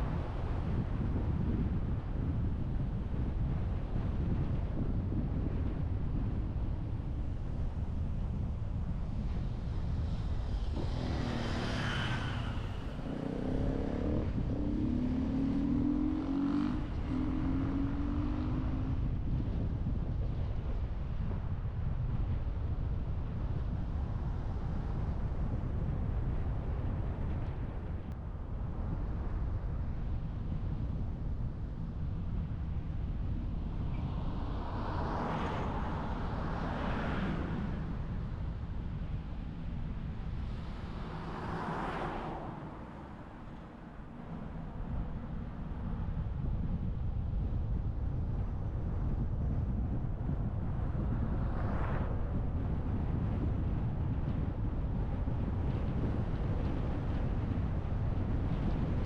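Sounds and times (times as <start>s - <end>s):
wind and road rumble: 0.0s - 59.0s
vehicle engine humming past: 10.2s - 19.0s, 34.0s - 45.9s.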